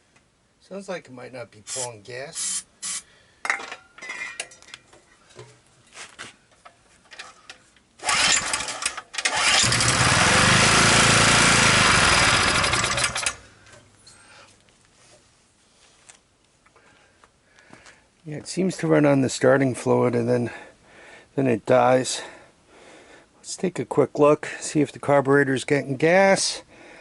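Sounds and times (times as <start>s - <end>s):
small generator engine running: 8.0s - 13.4s.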